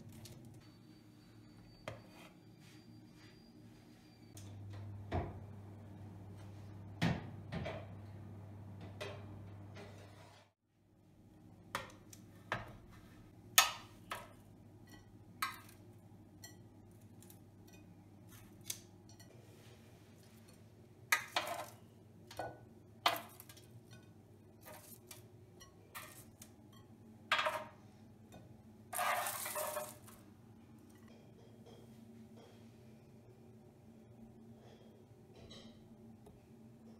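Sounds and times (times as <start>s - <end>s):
dishes and utensils clinking: 20.2s - 30.2s.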